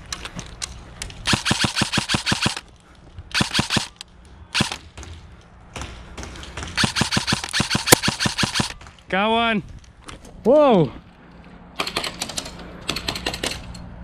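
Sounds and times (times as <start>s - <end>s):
airsoft guns firing bursts: 1.3s - 2.7s, 3.3s - 4.0s, 4.6s - 4.8s, 6.8s - 8.8s.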